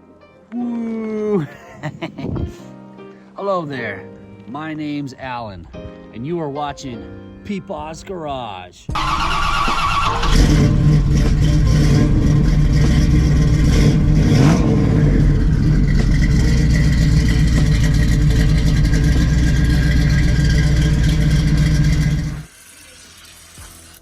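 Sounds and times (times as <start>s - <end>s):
car engine running: 9.0s - 22.5s.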